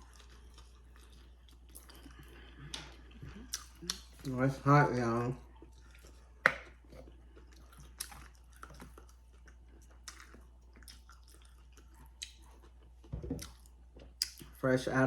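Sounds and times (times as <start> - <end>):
chewing food: 0.0 - 14.6.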